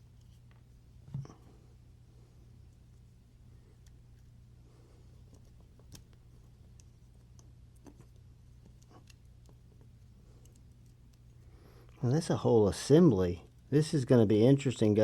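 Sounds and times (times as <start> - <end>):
faint clicks of knife parts: 3.7 - 4.3, 5.0 - 12.0.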